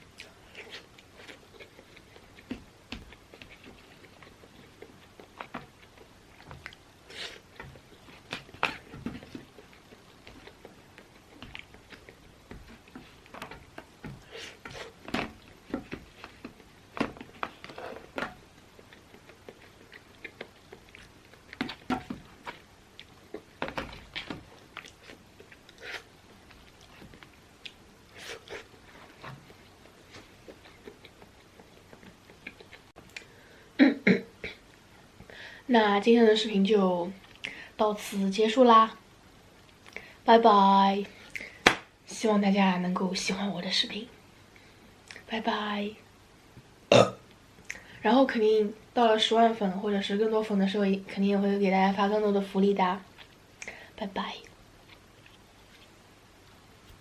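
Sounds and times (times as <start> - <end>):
person biting and chewing food: 0.1 - 33.3.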